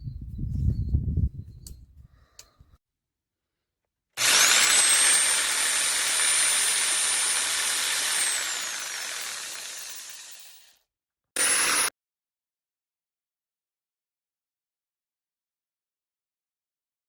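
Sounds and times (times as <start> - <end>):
jigsaw motor whine: 4.2 - 10.8, 11.4 - 11.9.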